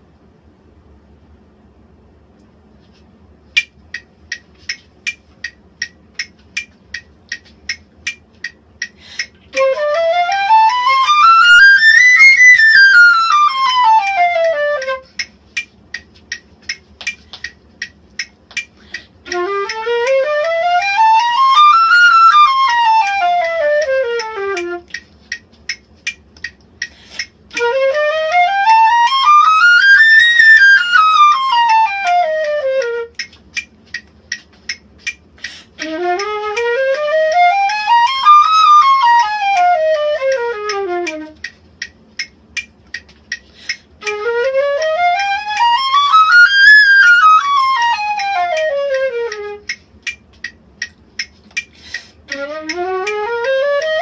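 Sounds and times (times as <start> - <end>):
metronome ticking: 3.6 - 54.0
flute playing scales: 9.2 - 15.3, 19.2 - 25.0, 27.5 - 33.3, 35.5 - 41.5, 44.0 - 49.8, 51.9 - 54.0.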